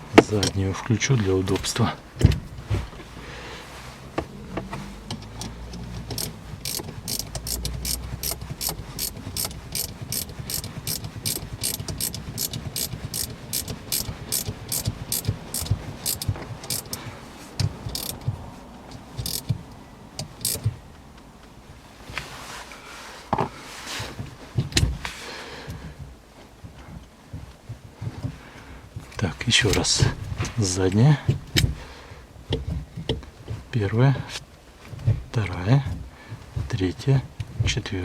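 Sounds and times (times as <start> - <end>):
ratchet wrench clicking: 5.2 - 17.0, 17.8 - 18.3, 19.1 - 19.6, 20.2 - 20.7.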